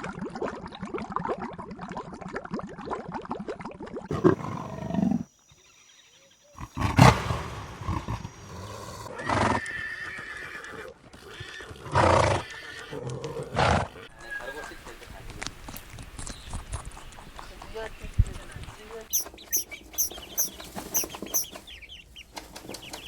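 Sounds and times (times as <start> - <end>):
animal calling: 4.1 - 14.8, 18.9 - 21.6.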